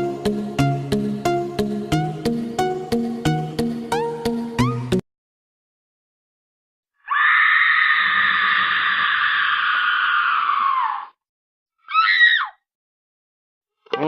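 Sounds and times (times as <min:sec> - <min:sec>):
high-pitched scream: 0:07.0 - 0:11.1, 0:11.8 - 0:12.6
short falling cry: 0:07.0 - 0:11.1.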